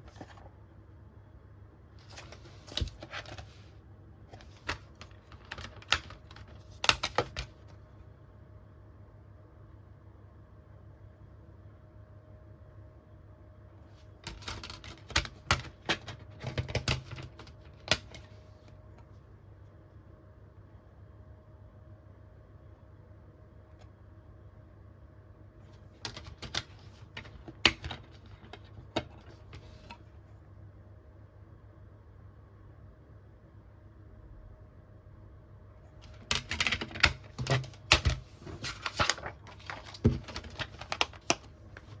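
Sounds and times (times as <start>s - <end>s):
faint room hum: 0.0s - 42.0s
plastic case clicks and rustles: 4.4s - 7.6s, 14.2s - 18.3s, 25.9s - 30.0s, 36.0s - 42.0s.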